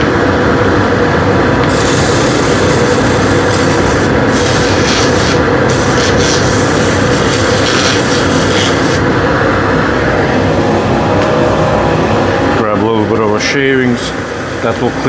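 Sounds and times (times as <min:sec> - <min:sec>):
wood lathe humming: 0:01.5 - 0:13.4
sandpaper rubbing spinning wood: 0:01.7 - 0:09.1.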